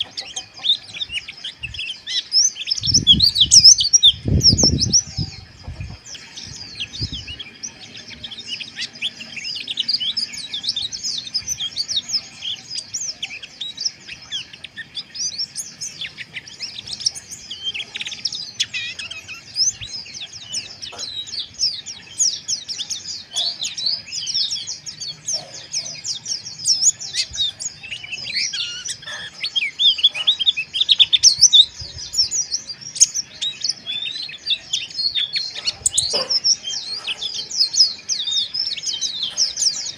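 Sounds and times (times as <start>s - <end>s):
small birds twittering: 0.0s - 39.9s.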